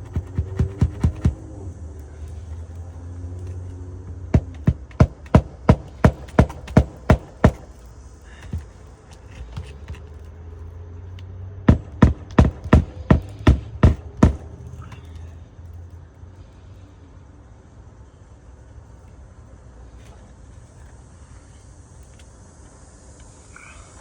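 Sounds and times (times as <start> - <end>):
hammer striking roofing nails: 0.0 - 1.6, 4.0 - 10.1, 11.7 - 15.0.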